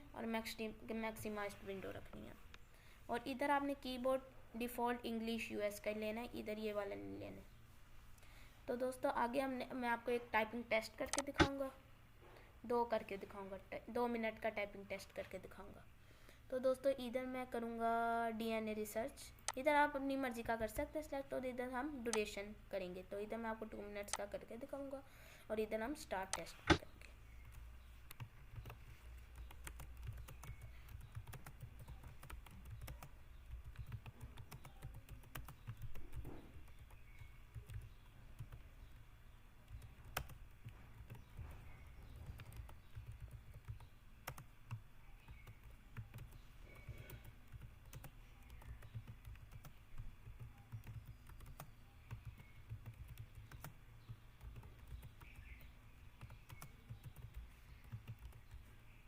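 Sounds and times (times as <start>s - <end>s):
fast typing on computer keyboard: 27.4s - 39.0s, 39.6s - 58.7s.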